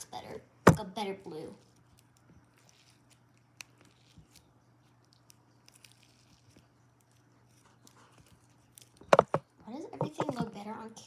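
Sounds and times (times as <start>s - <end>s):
faint low hum: 0.0s - 11.0s
slime squishing: 0.7s - 11.0s.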